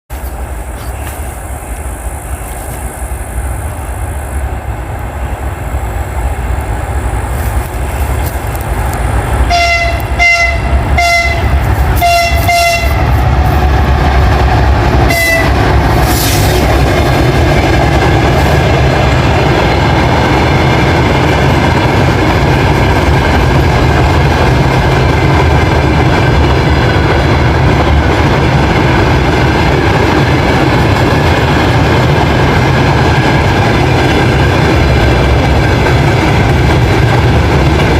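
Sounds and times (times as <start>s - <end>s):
train engine rumble: 0.1s - 37.9s
locomotive horn short toots: 9.5s - 13.2s, 15.1s - 15.6s.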